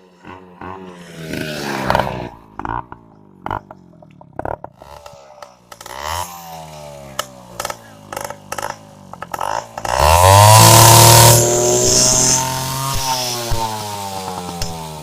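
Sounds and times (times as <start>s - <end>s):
motorcycle engine revving: 0.0s - 15.0s.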